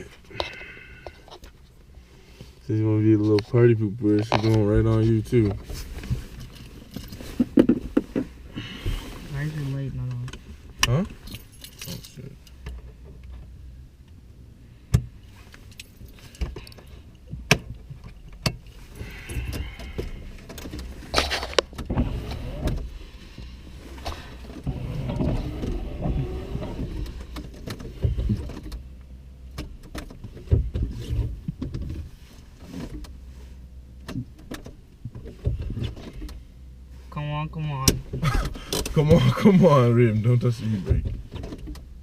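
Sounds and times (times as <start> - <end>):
keys rattling: 11.2 - 12.2.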